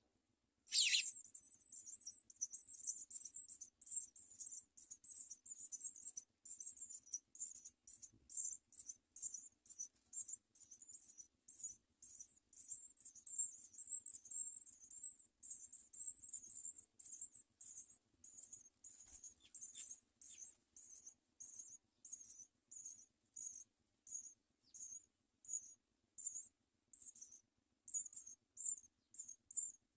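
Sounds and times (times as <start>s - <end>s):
lower falling bird notes: 0.7s - 1.1s
nestlings cheeping: 0.7s - 1.2s.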